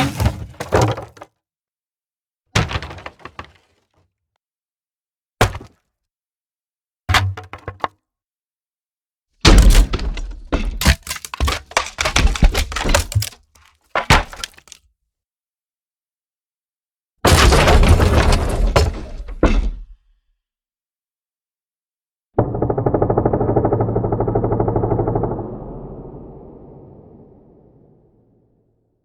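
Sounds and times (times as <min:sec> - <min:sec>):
wood breaking and cracking: 0:09.5 - 0:14.8, 0:17.3 - 0:19.9.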